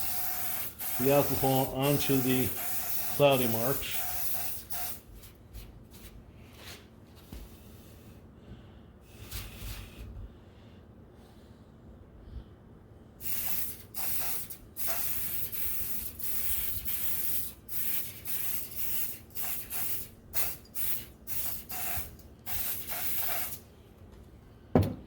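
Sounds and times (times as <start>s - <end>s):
aerosol spray hissing spurts: 0.0s - 5.0s, 13.2s - 23.6s.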